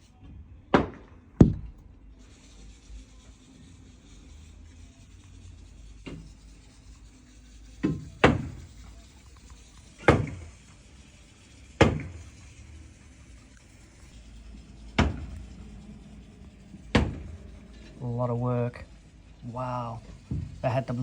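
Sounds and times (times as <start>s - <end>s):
faint knock: 0.7s - 1.9s, 20.1s - 20.6s
hammer banging on concrete: 10.0s - 10.5s, 11.8s - 12.3s.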